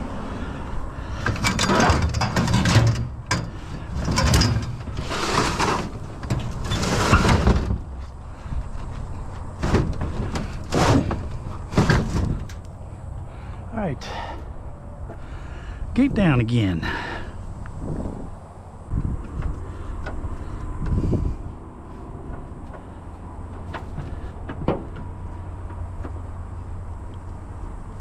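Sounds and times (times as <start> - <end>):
scrap metal clanking and scraping: 1.2 - 12.7.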